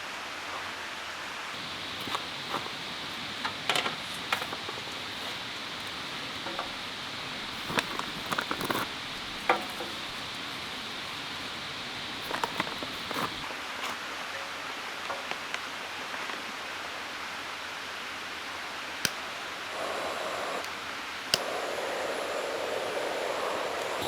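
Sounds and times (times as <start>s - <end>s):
small objects clicking and knocking: 1.6s - 13.5s
rushing hiss: 1.6s - 13.8s, 19.4s - 24.0s.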